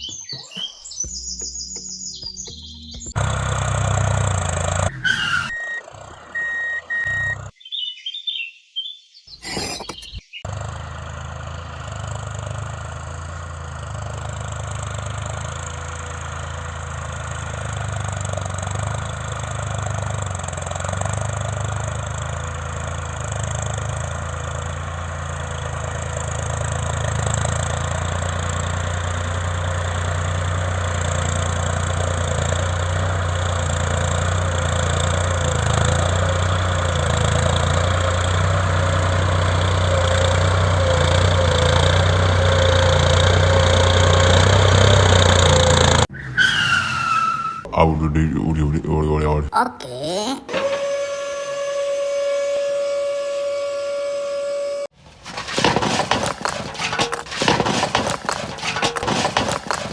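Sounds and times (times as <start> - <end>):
engine humming: 1.1 - 7.5, 9.4 - 46.1, 54.9 - 59.9.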